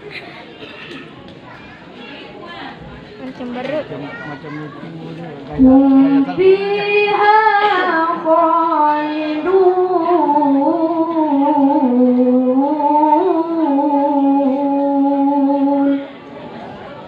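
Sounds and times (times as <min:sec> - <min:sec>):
child chanting melodically: 0:05.6 - 0:16.2.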